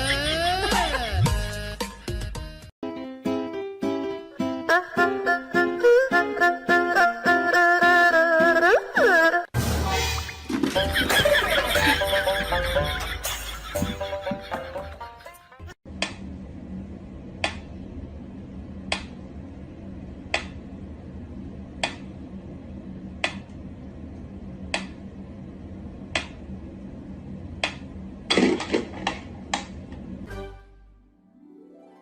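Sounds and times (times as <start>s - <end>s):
steady low hum: 15.9s - 30.3s.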